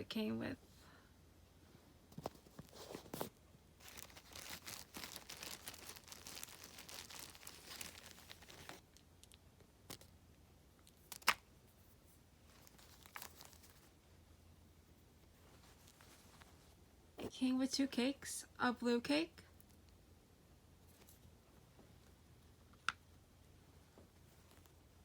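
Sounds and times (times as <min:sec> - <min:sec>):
plastic packaging crinkling: 0:02.4 - 0:10.1, 0:12.5 - 0:13.9.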